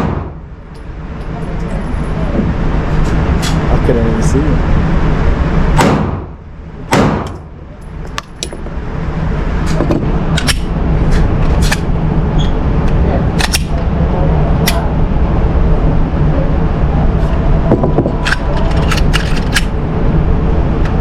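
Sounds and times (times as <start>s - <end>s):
low rumble: 0.0s - 21.0s
pistol shots: 5.8s - 6.3s, 6.9s - 7.4s.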